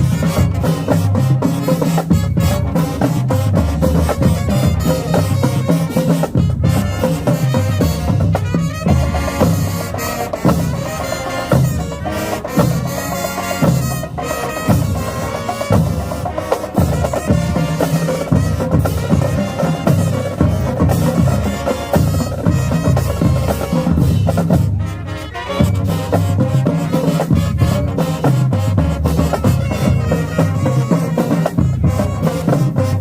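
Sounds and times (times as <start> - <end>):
heavy drumming: 0.0 - 33.0
marching band horns: 0.0 - 33.0.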